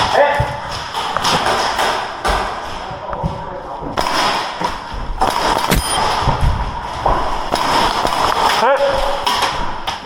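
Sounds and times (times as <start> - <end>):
airsoft gunfire: 4.0 - 4.6, 5.2 - 6.3, 7.4 - 9.4.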